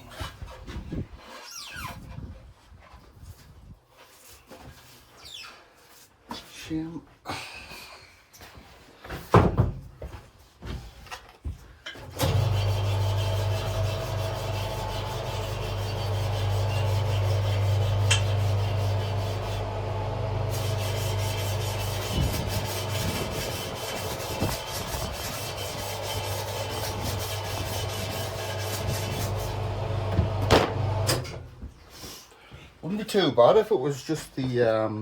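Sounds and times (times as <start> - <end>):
tyre machine motor humming: 12.2 - 31.3
rubber rubbing against machine: 20.4 - 29.6.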